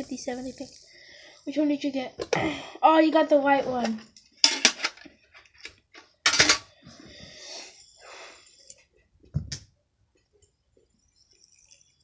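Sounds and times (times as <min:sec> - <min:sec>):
fidget spinners clinking: 0:00.0 - 0:01.8, 0:10.5 - 0:12.0.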